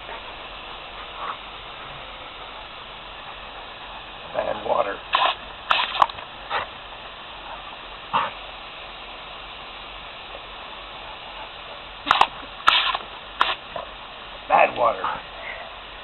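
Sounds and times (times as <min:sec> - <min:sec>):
background hiss: 0:00.0 - 0:16.0
dog barking: 0:07.5 - 0:08.4.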